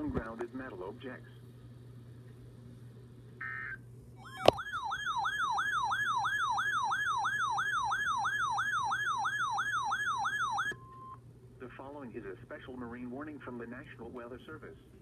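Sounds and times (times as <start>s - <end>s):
warbling alert siren: 3.4s - 10.8s.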